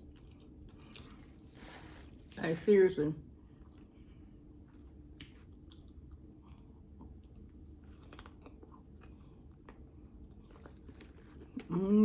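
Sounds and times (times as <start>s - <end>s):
low steady hum: 0.0s - 12.0s
close-miked chewing: 4.7s - 11.8s.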